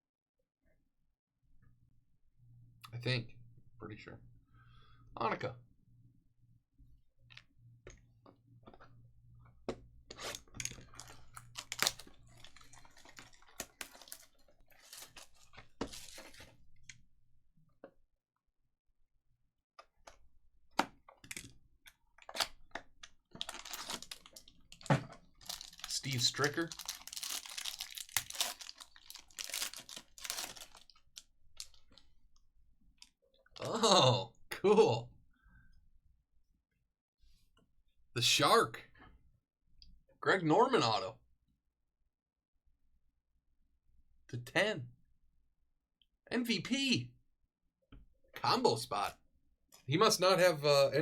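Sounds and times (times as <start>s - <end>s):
clicks taps and crinkly rustles: 7.2s - 17.0s, 19.8s - 33.6s
cards and wrappers handled: 10.2s - 16.6s, 22.2s - 32.1s.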